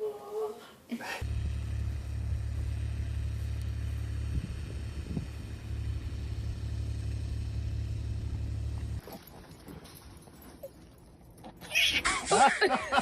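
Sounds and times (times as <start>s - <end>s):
steady low rumble: 1.2s - 9.0s.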